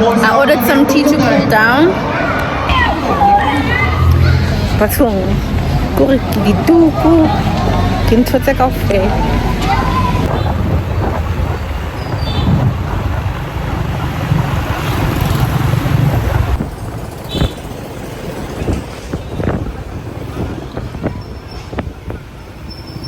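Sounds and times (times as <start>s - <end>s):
engines rumbling: 0.0s - 23.0s.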